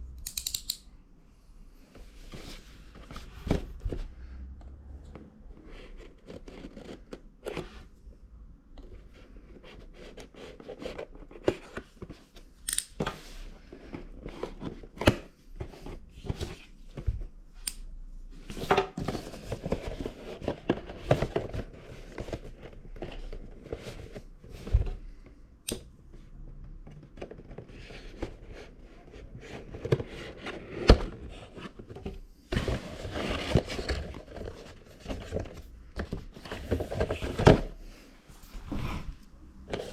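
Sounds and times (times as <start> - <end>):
cardboard and plastic rustling: 18.4 - 25.3, 26.2 - 39.9.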